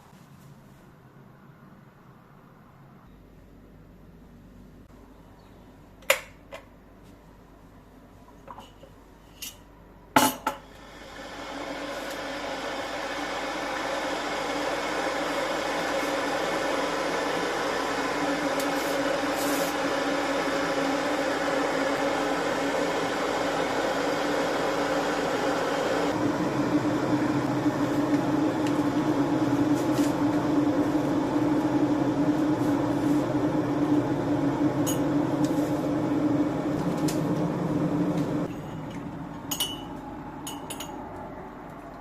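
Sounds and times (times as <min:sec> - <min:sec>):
household appliance humming: 0:10.7 - 0:39.5.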